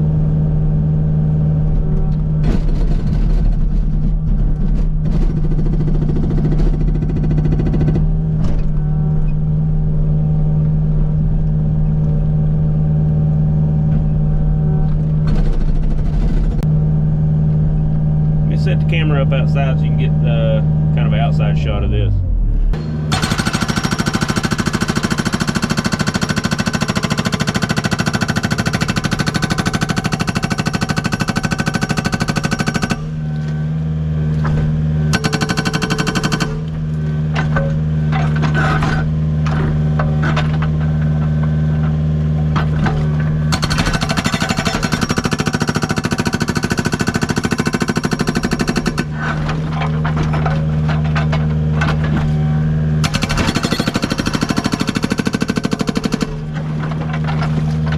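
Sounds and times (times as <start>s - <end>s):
diesel engine running: 0.0s - 57.9s
hydraulic breaker pounding rock: 1.8s - 8.9s, 14.9s - 16.7s, 22.7s - 33.6s, 34.3s - 57.9s.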